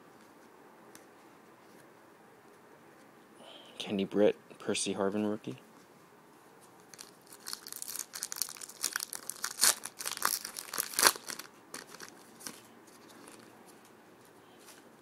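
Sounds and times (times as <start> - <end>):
foil wrapper crinkling and tearing: 6.8 - 13.5.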